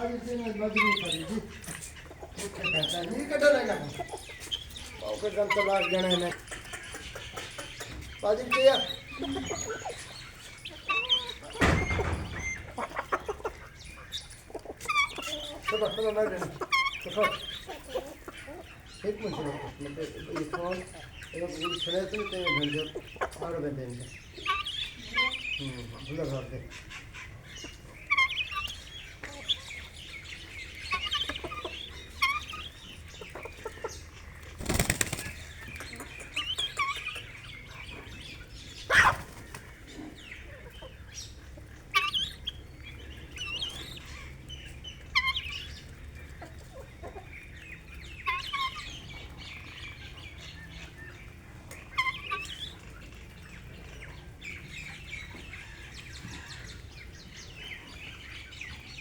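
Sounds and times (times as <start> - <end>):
birds chirping: 0.0 - 59.0
wings flapping: 34.4 - 36.4.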